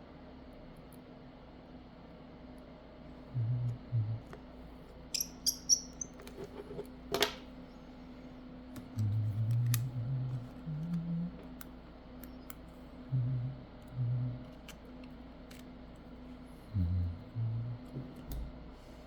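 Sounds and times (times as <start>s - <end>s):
low hum: 7.6s - 18.2s.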